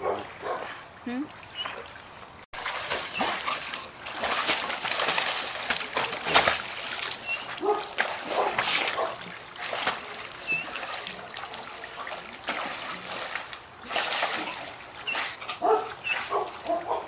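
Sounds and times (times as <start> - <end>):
dog barks: 0.0 - 0.7, 7.6 - 9.2, 15.6 - 17.0
water sloshing and dripping: 0.0 - 17.0
dogs splashing in water: 1.4 - 17.0.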